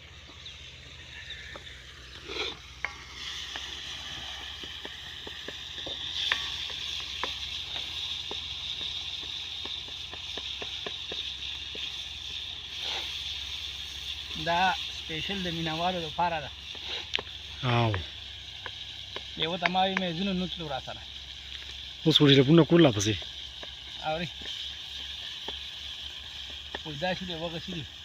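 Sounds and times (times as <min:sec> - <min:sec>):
meat sizzling in oil: 0:00.0 - 0:28.0
oil spattering pops: 0:01.4 - 0:14.5, 0:16.6 - 0:27.8.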